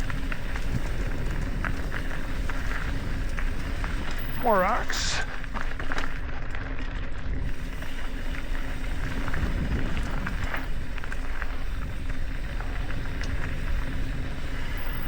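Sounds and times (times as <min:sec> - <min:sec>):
bike knocks and rattles: 0:00.0 - 0:04.4
bike tyres grinding over rock: 0:00.0 - 0:15.0.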